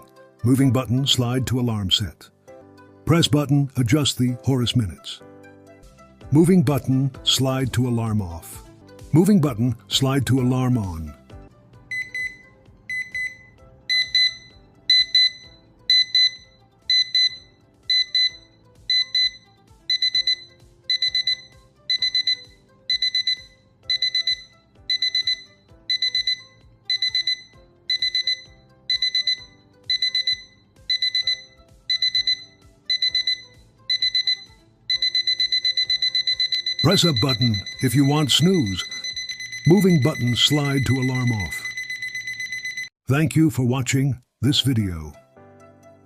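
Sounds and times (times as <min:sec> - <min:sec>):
alarm clock beeping: 0:11.9 - 0:43.0.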